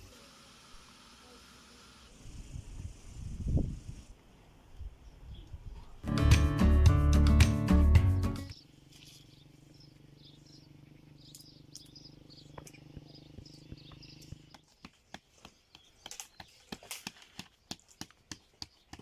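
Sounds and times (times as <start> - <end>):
small birds chirping: 4.8 - 6.1, 8.1 - 19.0
sharp irregular taps: 12.6 - 19.0.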